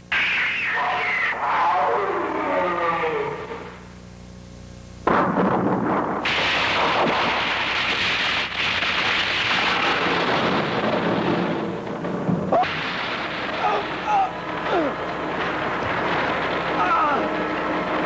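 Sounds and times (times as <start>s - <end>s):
loud blast: 0.0s - 3.7s, 5.0s - 18.0s
rumbling crackling noise: 0.0s - 18.0s.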